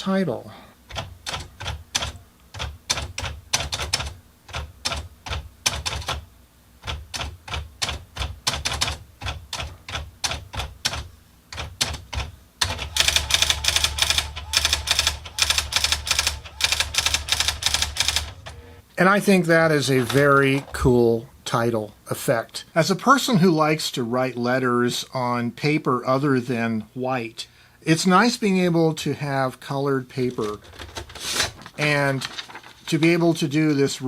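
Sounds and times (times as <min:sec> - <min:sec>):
typewriter keys clicking: 0:06.8 - 0:18.6
daisywheel printing strikes: 0:06.8 - 0:18.8.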